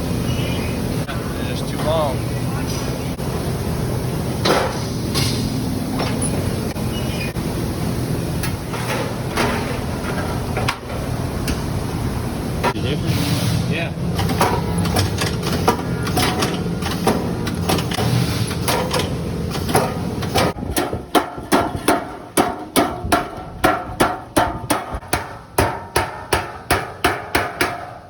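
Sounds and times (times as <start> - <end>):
steady low hum: 0.0 - 26.6
hammer striking sheet metal: 19.7 - 28.0.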